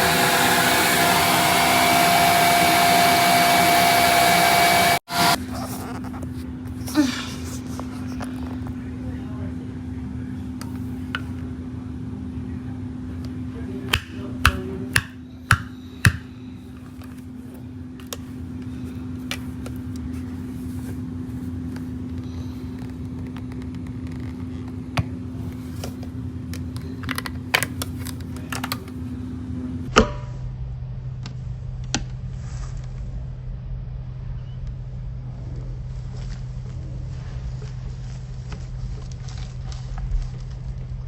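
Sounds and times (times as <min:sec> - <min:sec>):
vacuum cleaner humming: 0:00.0 - 0:08.5.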